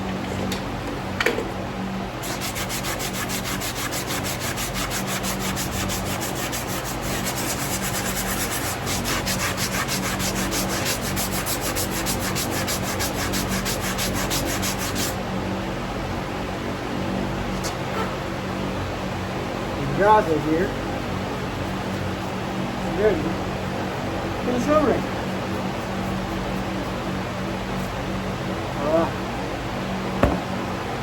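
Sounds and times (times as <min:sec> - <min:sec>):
sharp knock: 0:30.2 - 0:30.6.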